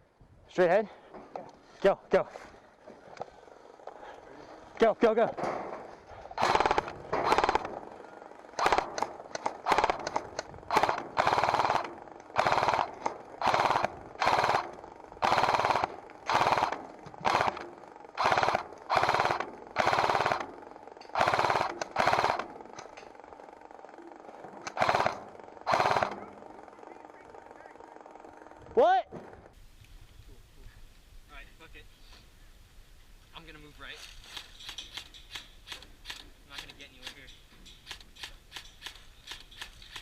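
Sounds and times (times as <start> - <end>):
airsoft gun full-auto bursts: 6.4 - 22.9, 24.6 - 28.5.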